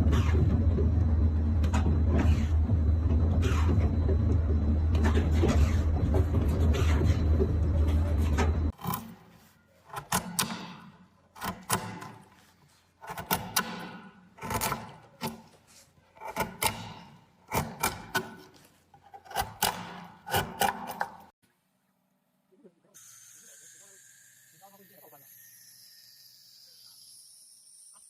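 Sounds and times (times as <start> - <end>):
loud low rumble: 0.0 - 8.7.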